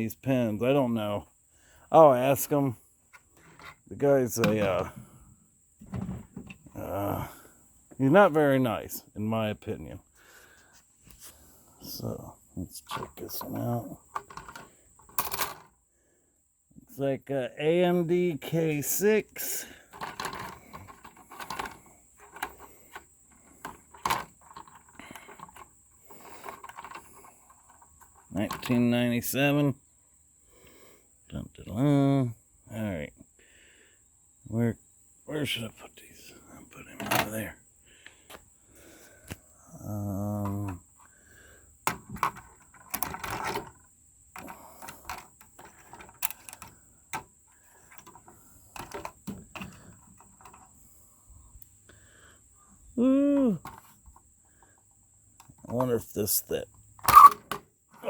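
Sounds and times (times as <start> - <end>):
computer parts clicking and rattling: 19.9 - 27.8, 41.9 - 43.8
computer hardware clicking and rattling: 20.0 - 23.0.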